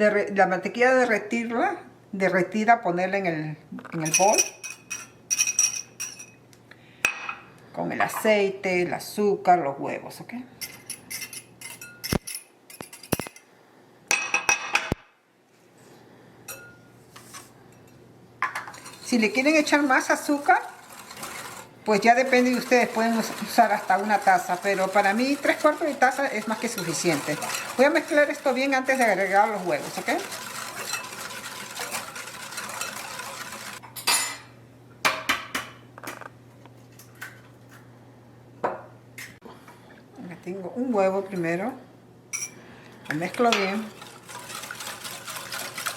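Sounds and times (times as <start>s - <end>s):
glassware clinking: 4.0s - 6.4s, 42.4s - 42.6s
utensil clinking against bowl: 17.7s - 34.4s, 42.4s - 45.9s
utensil scraping mixing bowl: 18.6s - 33.8s, 43.0s - 45.9s.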